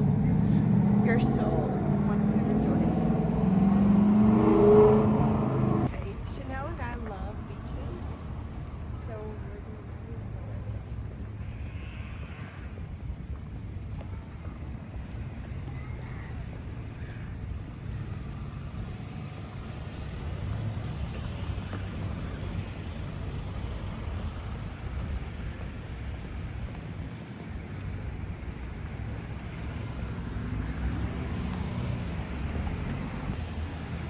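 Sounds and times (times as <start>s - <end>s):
vehicle engine rising: 0.0s - 6.0s, 27.4s - 34.0s
road traffic rumble: 0.0s - 34.0s.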